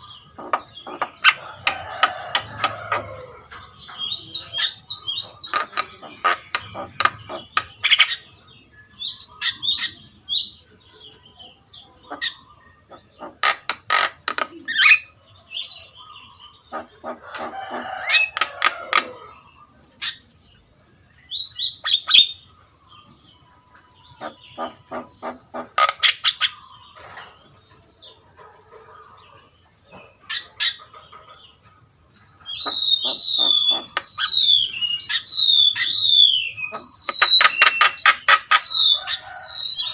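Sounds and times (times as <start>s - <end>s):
bird singing varied whistles: 32.6s - 39.0s.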